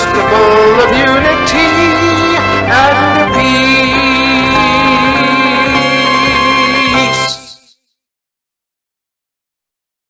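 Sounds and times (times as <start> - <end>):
instrumental backing: 0.0 - 7.7
person singing long vibrato note: 0.2 - 7.6.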